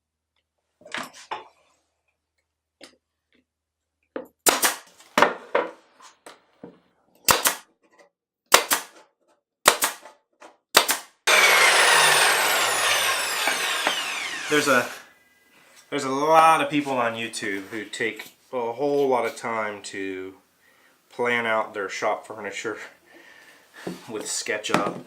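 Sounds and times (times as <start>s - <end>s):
nail gun shots: 4.4s - 4.9s, 7.3s - 7.6s, 8.5s - 9.0s, 9.6s - 10.1s, 10.7s - 11.1s
power tool motor: 11.3s - 15.1s.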